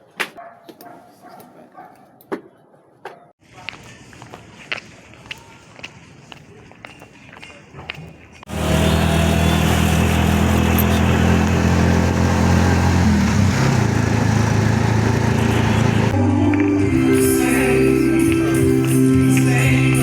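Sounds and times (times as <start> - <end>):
electric motor humming: 8.5 - 16.2.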